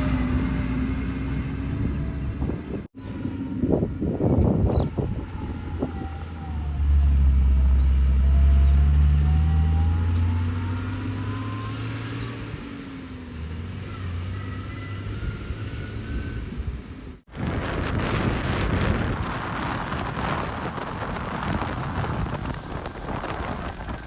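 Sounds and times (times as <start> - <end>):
heavy vehicle engine running: 0.0 - 11.4.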